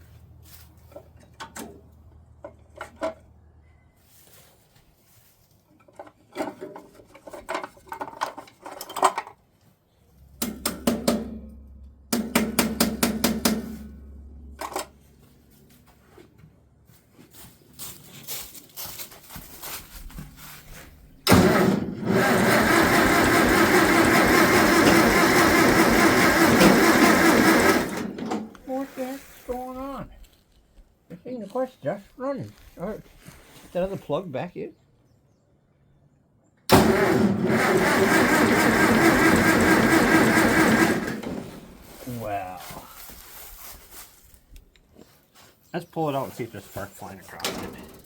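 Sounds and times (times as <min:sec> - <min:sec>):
tractor engine running: 0:10.2 - 0:15.7, 0:21.2 - 0:28.9, 0:36.7 - 0:42.0
engine starter cranking: 0:21.2 - 0:28.5, 0:36.7 - 0:41.8.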